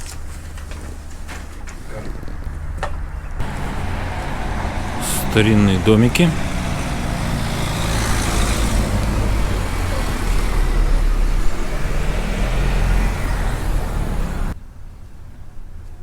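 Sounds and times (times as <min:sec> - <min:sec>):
road and traffic noise: 0:00.0 - 0:14.6
vehicle engine running: 0:02.2 - 0:14.6.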